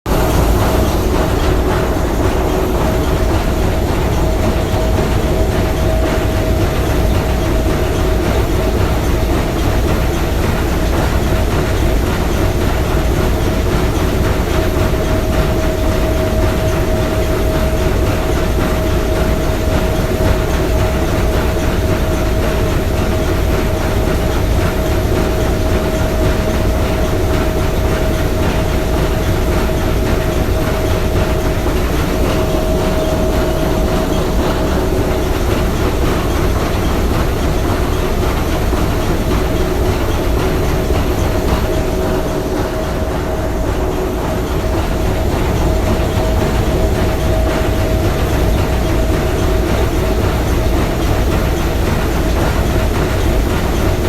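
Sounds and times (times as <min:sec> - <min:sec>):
steam engine clattering: 0:00.1 - 0:54.0.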